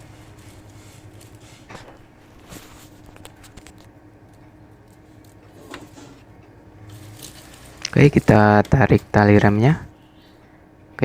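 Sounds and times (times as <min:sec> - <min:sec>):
faint taps and rustles: 0:00.0 - 0:06.1
low steady hum: 0:00.0 - 0:11.0.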